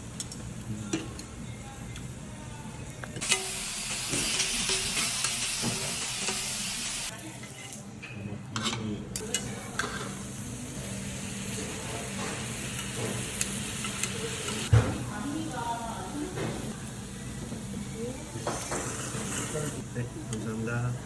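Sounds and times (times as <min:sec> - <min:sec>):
food sizzling in a hot pan: 0:03.2 - 0:07.1, 0:09.8 - 0:14.7.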